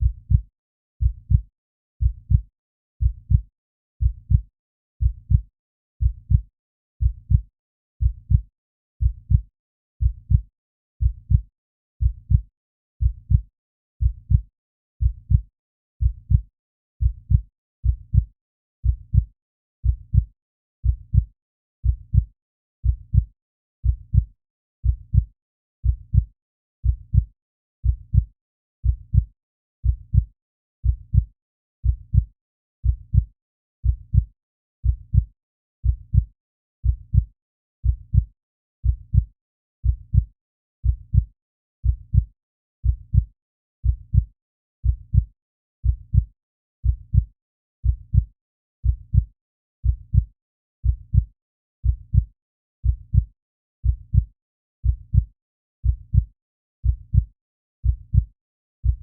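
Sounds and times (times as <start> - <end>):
heartbeat thumps: 0.0 - 0.4, 1.0 - 1.4, 2.0 - 2.4, 3.0 - 3.4, 4.0 - 4.4, 5.0 - 5.4, 6.0 - 6.4, 7.0 - 7.4, 8.0 - 8.4, 9.0 - 9.4, 10.0 - 10.4, 11.0 - 11.4, 12.0 - 12.4, 13.0 - 13.4, 14.0 - 14.4, 15.0 - 15.4, 16.0 - 16.4, 17.0 - 17.4, 18.0 - 18.3, 19.1 - 19.3, 20.1 - 20.3, 21.1 - 21.3, 22.1 - 23.3, 36.1 - 38.3, 39.1 - 39.3, 42.1 - 43.3, 47.8 - 48.3, 54.8 - 55.2, 55.8 - 56.2, 56.8 - 57.2, 57.8 - 58.2.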